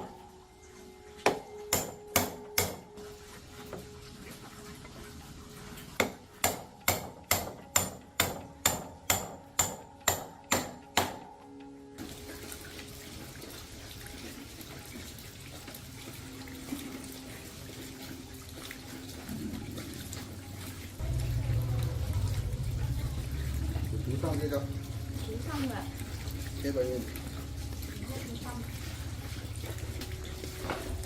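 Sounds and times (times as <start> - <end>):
hammer striking metal: 1.2 - 2.9, 6.0 - 11.4.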